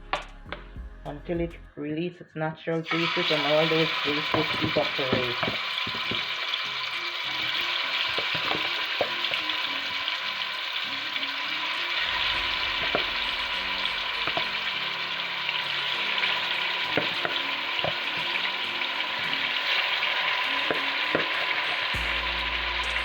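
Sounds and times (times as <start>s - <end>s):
chicken frying in hot oil: 2.8s - 23.0s
oil popping: 2.9s - 23.0s.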